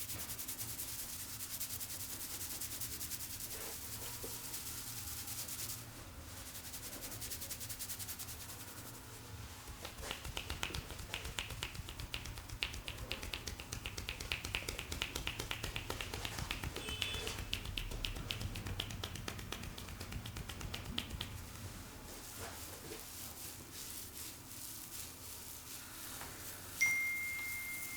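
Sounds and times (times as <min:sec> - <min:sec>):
fingers tapping on head: 0:09.8 - 0:21.5.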